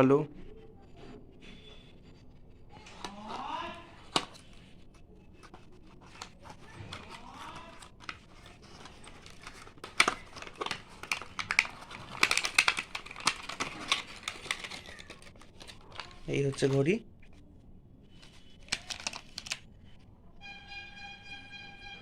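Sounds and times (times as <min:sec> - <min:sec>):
packaging crinkling: 0:02.7 - 0:17.4, 0:18.0 - 0:20.0.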